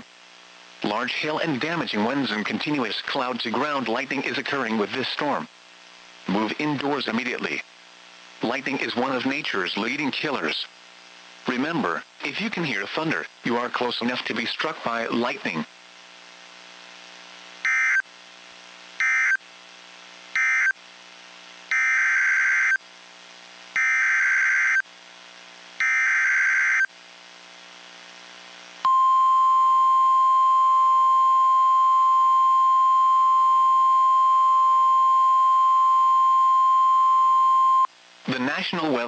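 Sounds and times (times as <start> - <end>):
steady attention tone: 28.8 - 37.9.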